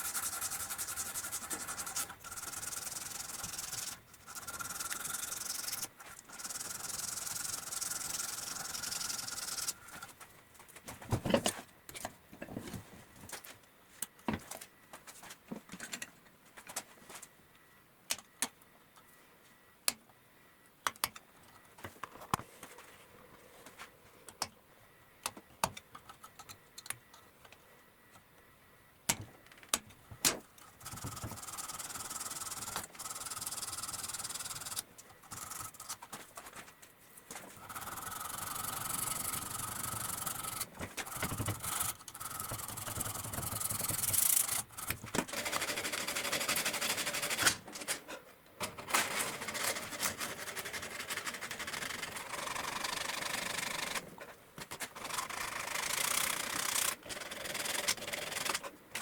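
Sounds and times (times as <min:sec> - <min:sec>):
knife sanding hiss: 0:00.0 - 0:09.9.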